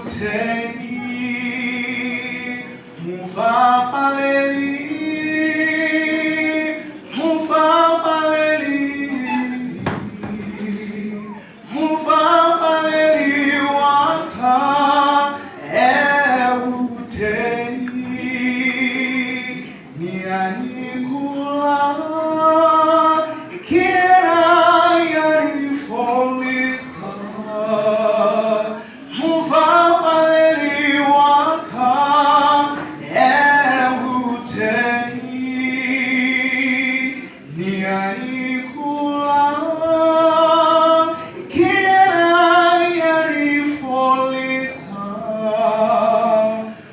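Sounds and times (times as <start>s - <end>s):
voices singing a church song: 0.0s - 46.9s.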